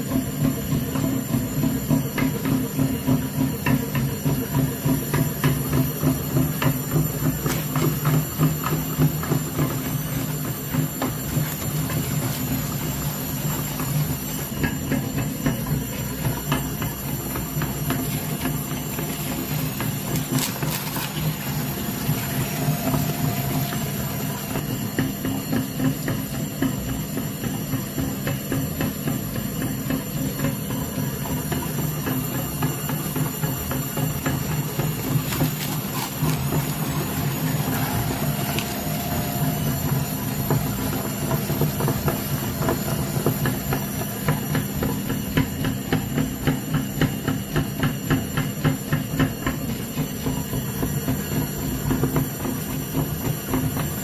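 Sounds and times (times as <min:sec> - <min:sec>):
meat grinder motor running: 0:00.0 - 0:54.0
crunching and knocking in grinder: 0:04.9 - 0:25.4, 0:31.5 - 0:48.3.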